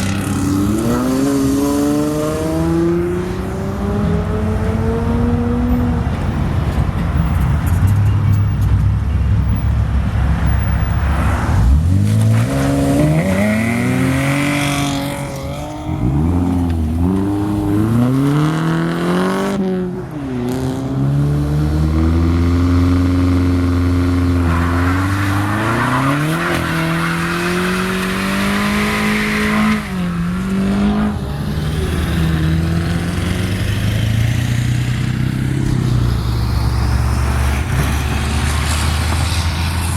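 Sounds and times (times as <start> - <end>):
car engine revving: 10.9 - 39.9.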